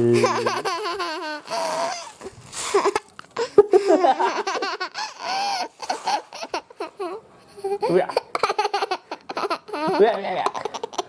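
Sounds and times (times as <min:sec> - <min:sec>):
man laughing: 0:00.0 - 0:07.0
toddler laughing: 0:00.0 - 0:11.0.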